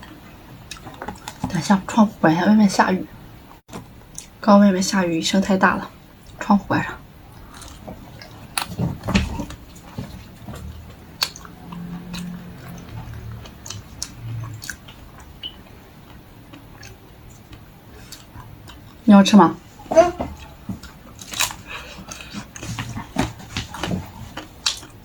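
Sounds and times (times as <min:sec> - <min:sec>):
chewing ice cream bar: 0:07.3 - 0:19.0, 0:20.3 - 0:25.0.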